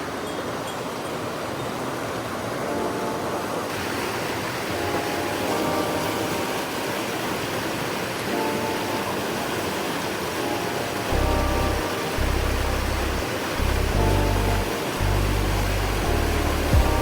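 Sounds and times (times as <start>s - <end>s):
faint background music: 0.0s - 17.0s
rushing stream water: 0.0s - 17.0s.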